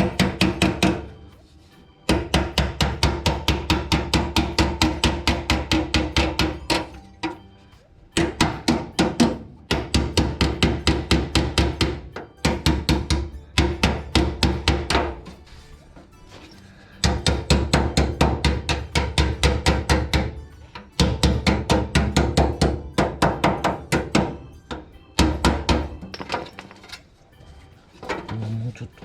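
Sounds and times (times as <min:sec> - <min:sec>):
hammer beating steel sheet: 0:00.0 - 0:01.2, 0:02.1 - 0:07.4, 0:08.2 - 0:15.3, 0:17.0 - 0:20.4, 0:21.0 - 0:24.4.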